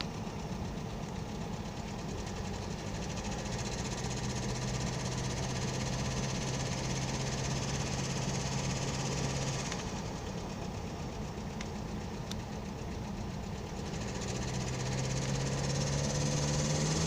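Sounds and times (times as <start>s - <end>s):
diesel engine idling: 0.0s - 17.0s
engine knock: 0.0s - 17.0s
steady low hum: 0.0s - 17.0s.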